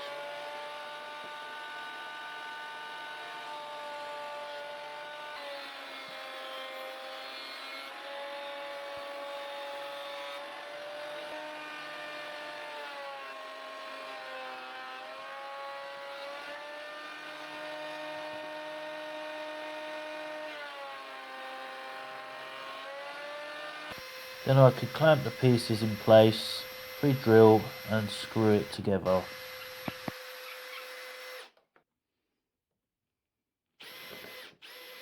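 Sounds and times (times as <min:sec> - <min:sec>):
thickness planer motor whine: 0:10.7 - 0:31.5.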